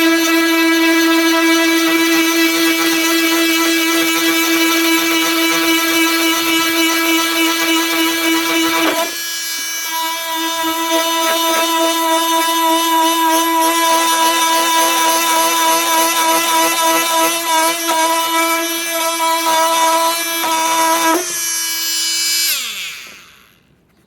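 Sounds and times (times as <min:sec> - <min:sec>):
oscillating multi-tool buzzing: 0:00.0 - 0:23.7.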